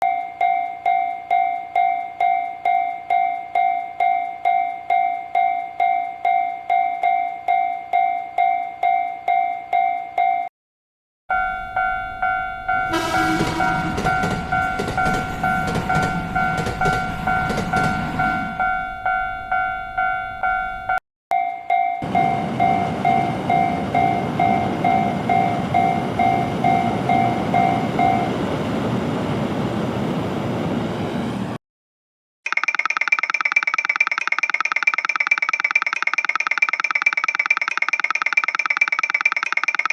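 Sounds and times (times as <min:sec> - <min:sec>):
crossing alarm bell ringing: 0:00.0 - 0:10.5, 0:11.3 - 0:28.9
train rushing past: 0:12.9 - 0:18.8, 0:22.0 - 0:31.6.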